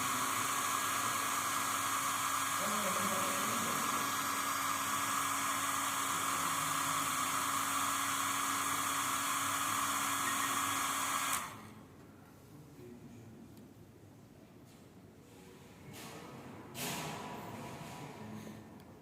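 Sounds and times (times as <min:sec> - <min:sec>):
hot-air blower whirring: 0:00.0 - 0:11.9.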